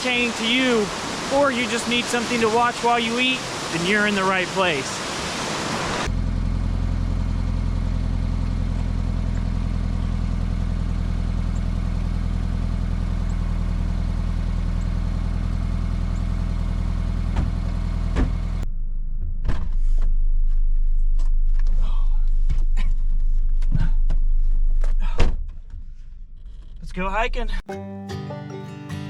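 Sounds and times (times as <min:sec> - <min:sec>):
car engine idling: 0:06.1 - 0:19.4.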